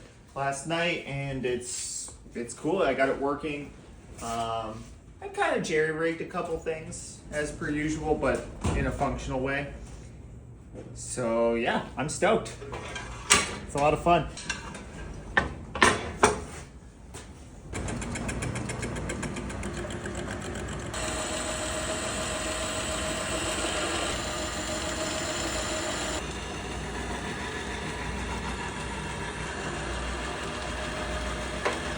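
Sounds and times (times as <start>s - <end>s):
metal lathe running: 17.8s - 31.9s.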